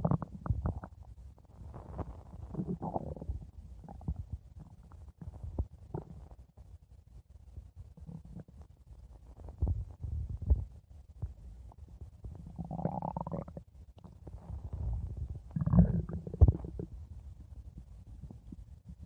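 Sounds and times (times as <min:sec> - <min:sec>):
stomach growling: 0:00.0 - 0:06.5, 0:08.0 - 0:08.7, 0:09.3 - 0:11.4, 0:12.1 - 0:17.0.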